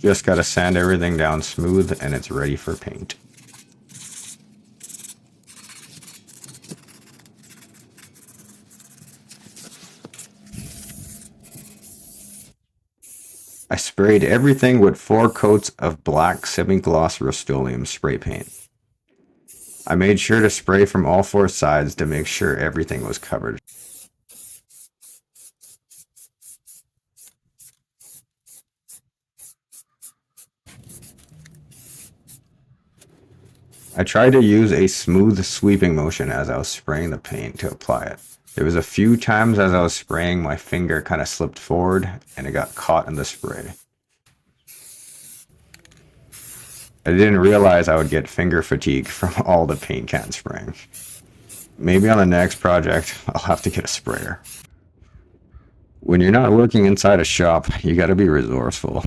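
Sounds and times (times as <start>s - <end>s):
sandpaper rasping on metal: 0.0s - 14.6s, 22.1s - 32.4s, 37.3s - 41.1s, 42.0s - 43.9s, 44.7s - 45.6s, 46.3s - 54.7s
spray paint can hissing: 0.0s - 14.6s, 18.3s - 18.7s, 19.5s - 20.6s, 22.1s - 32.4s, 33.7s - 36.4s, 37.0s - 41.1s, 41.9s - 43.9s, 44.7s - 54.7s.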